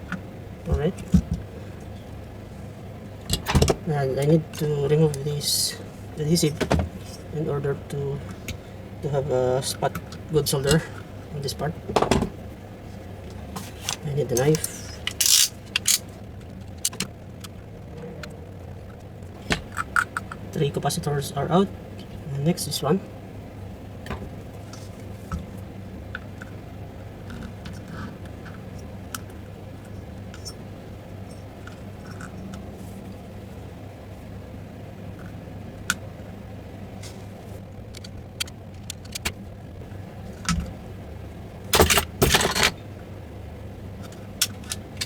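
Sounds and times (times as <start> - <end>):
steady low hum: 0.0 - 45.0
small metal tools clicking: 14.4 - 16.1.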